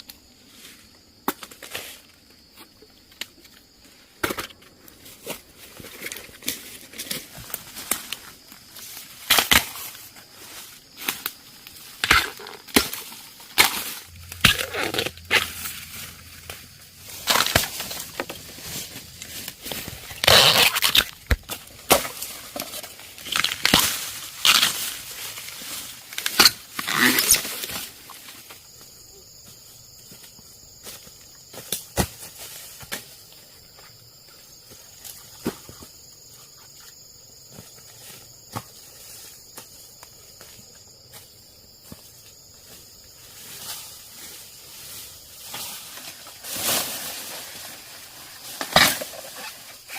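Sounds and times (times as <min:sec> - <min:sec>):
high insect chirr: 0:00.0 - 0:49.9
dry plant rustling and crunching: 0:04.6 - 0:28.4, 0:42.6 - 0:49.9.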